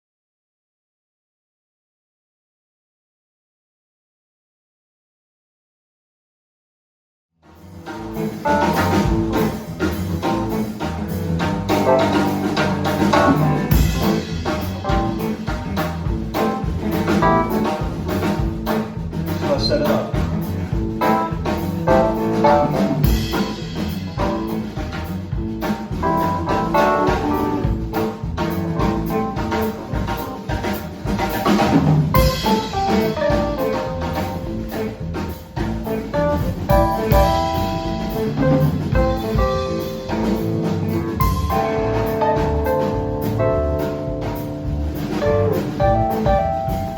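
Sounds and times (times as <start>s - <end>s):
drum kit beat: 7.6s - 46.9s
live blues band playing: 7.6s - 46.9s.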